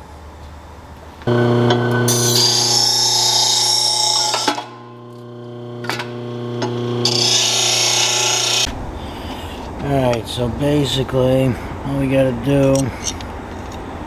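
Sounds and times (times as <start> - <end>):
electric grinder grinding metal: 1.3 - 8.7.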